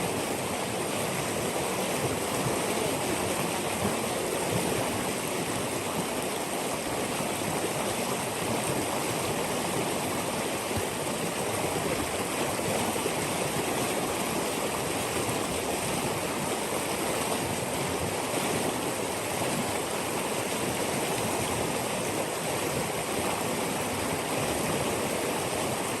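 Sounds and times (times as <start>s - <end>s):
water rushing: 0.0s - 26.0s.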